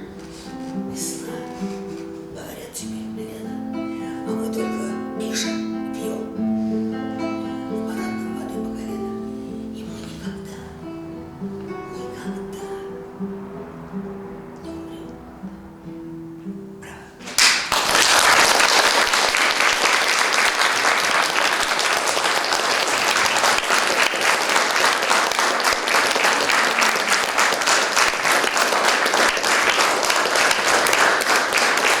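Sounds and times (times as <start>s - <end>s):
acoustic guitar notes: 0.0s - 17.7s
audience applause: 17.3s - 32.0s.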